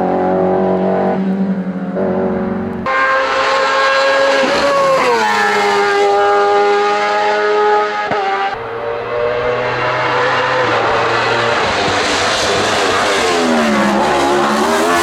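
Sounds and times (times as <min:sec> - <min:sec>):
race car engine at high revs: 0:00.0 - 0:15.0.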